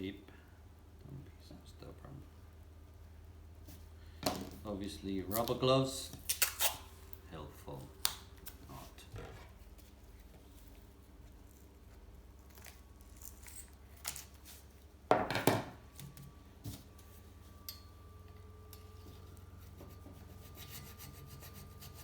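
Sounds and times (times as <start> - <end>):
small knocks and handling noises: 4.2 - 4.6
metal file rasping on steel: 19.7 - 22.0.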